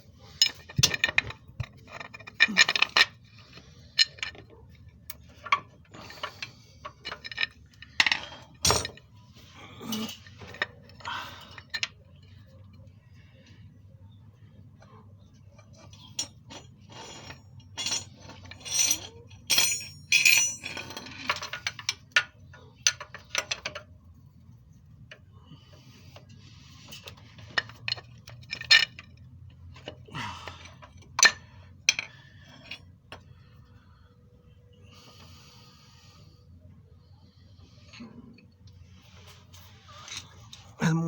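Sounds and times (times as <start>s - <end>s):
hand tools clinking on metal: 15.8s - 22.2s.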